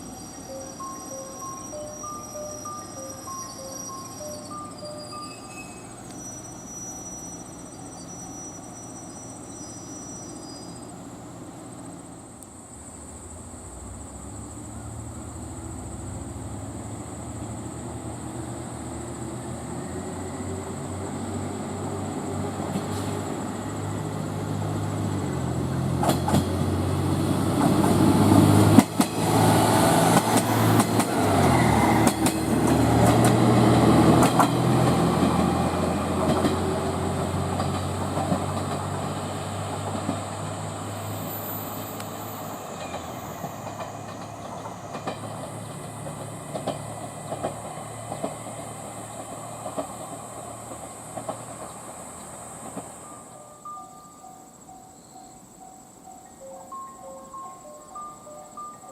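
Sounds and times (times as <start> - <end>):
train wheels clacking over rails: 21.7 - 53.3.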